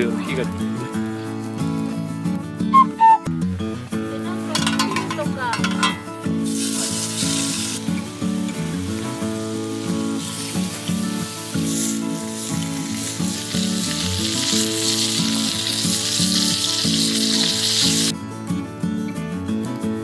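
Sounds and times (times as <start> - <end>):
background music: 0.0 - 20.0
steady sizzling hiss: 3.8 - 18.1.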